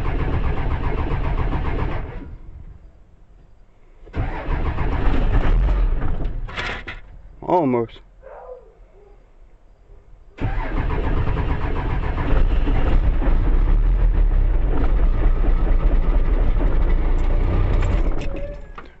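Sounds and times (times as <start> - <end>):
starter motor cranking: 10.4 - 13.8
diesel engine running: 10.4 - 19.0.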